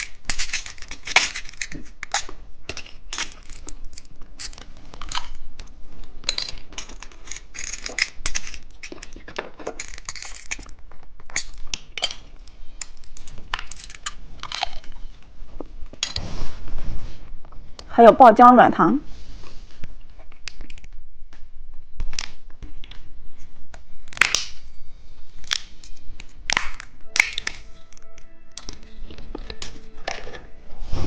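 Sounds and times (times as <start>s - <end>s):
plastic wrapper tearing and crinkling: 6.8s - 12.2s.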